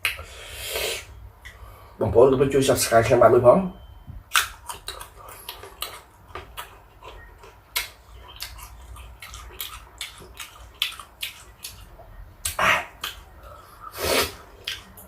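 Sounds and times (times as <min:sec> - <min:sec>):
crunching fruit: 0:04.3 - 0:13.3.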